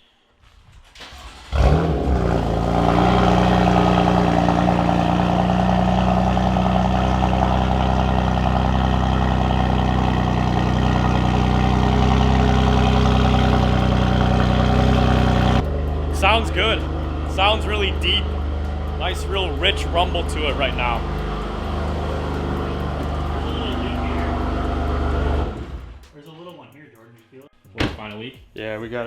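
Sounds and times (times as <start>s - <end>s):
car engine starting and idling: 0.8s - 26.1s.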